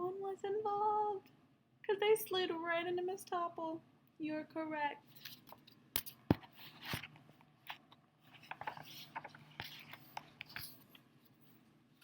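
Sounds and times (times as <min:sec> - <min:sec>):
book page turning: 0:05.1 - 0:11.0.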